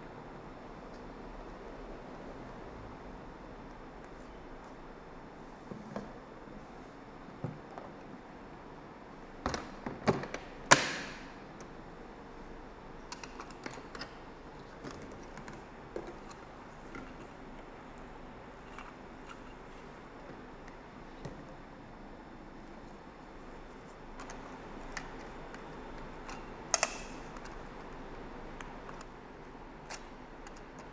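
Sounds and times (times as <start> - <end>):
sharp plastic snap: 10.7 - 11.2, 26.3 - 27.5.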